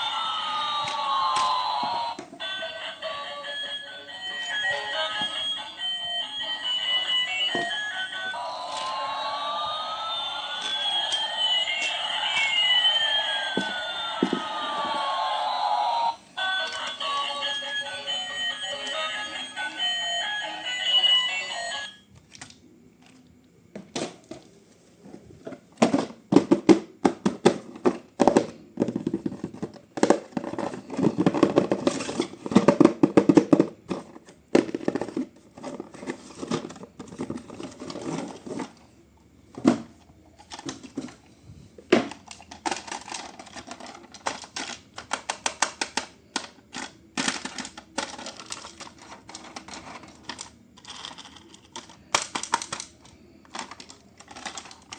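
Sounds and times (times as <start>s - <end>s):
plastic toy clicking and rattling: 42.1s - 54.9s
packaging crinkling: 46.7s - 52.9s.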